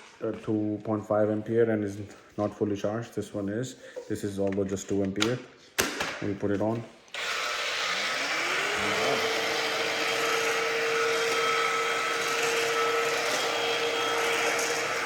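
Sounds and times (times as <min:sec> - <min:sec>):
vacuum motor whine: 0:07.2 - 0:15.0.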